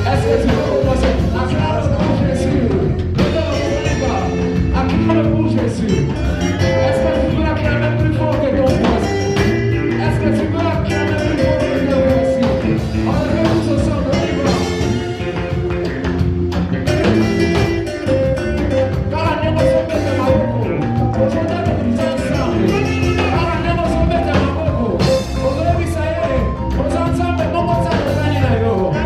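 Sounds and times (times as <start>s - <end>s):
steady drum beat: 0.0s - 29.0s
worship band playing: 0.0s - 29.0s.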